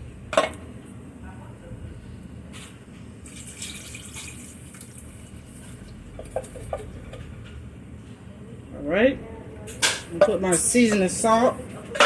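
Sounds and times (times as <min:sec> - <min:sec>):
water running: 0:03.2 - 0:06.0.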